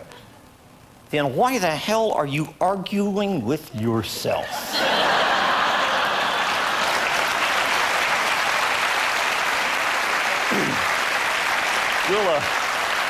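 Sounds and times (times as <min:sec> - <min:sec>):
audience applauding: 0:04.8 - 0:13.0.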